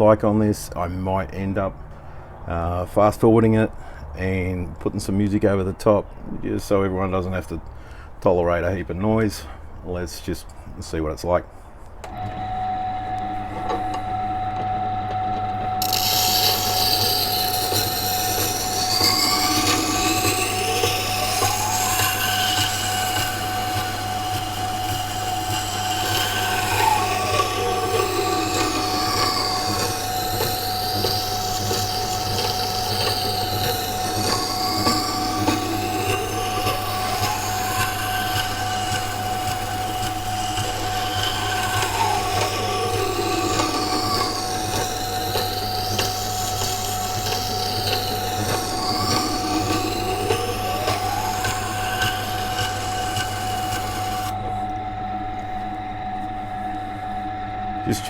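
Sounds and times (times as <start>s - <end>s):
grinder motor humming: 12.0s - 58.0s
steady squealing tone: 12.1s - 58.0s
whining sweeping tones: 12.1s - 58.0s
knife grinding on stone wheel: 15.8s - 54.4s.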